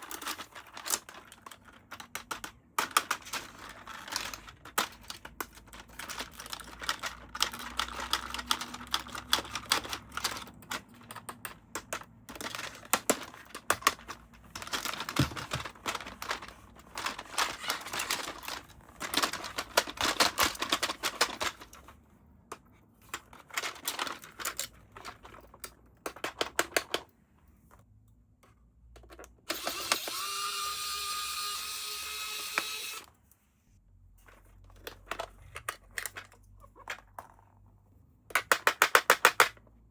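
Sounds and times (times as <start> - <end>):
plastic and cardboard crinkling: 0.0 - 27.0.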